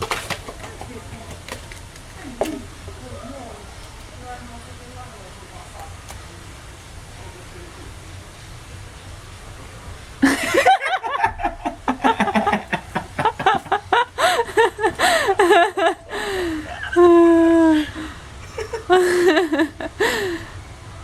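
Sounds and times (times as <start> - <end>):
people laughing: 10.2 - 20.4.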